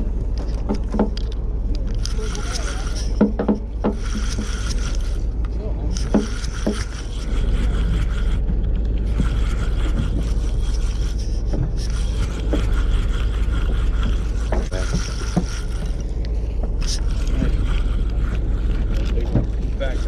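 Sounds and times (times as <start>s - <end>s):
boat engine running: 0.0s - 20.0s
distant voices: 0.0s - 20.0s
faint scraping: 0.0s - 20.0s.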